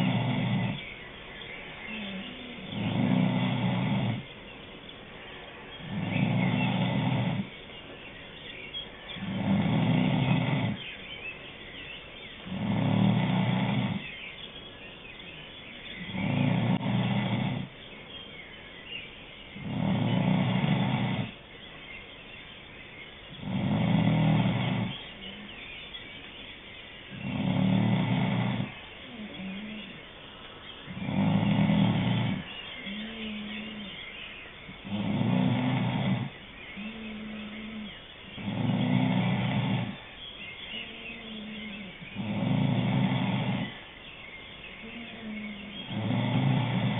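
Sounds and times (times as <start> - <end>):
person snoring: 0.0 - 0.8, 2.0 - 4.2, 5.8 - 7.5, 12.5 - 14.0, 16.1 - 17.7, 27.2 - 30.0, 30.9 - 34.0, 34.8 - 40.0, 44.8 - 46.9.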